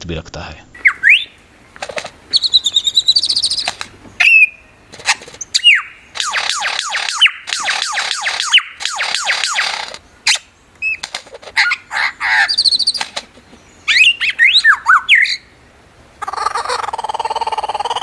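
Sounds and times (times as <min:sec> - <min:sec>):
lyrebird calling: 0:00.7 - 0:15.6, 0:16.2 - 0:18.0.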